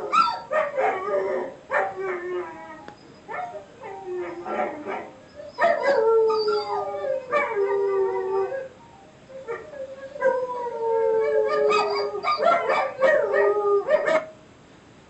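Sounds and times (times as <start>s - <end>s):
dog yipping: 0.0s - 1.1s, 11.5s - 14.4s
dog howling: 0.0s - 8.7s, 9.4s - 14.3s.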